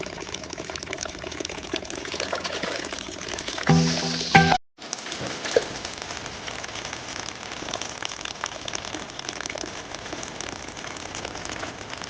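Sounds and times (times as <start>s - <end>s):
crackling patter of ticks: 4.9s - 12.0s.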